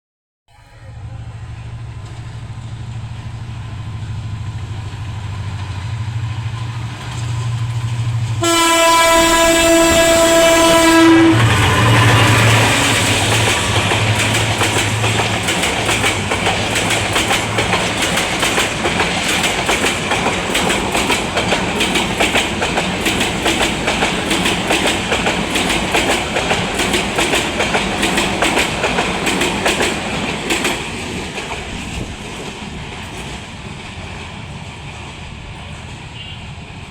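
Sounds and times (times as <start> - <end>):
diesel locomotive droning: 0.5 - 36.9
train wheels clickety-clack: 1.8 - 36.9
train horn blast: 8.4 - 14.2, 36.2 - 36.6.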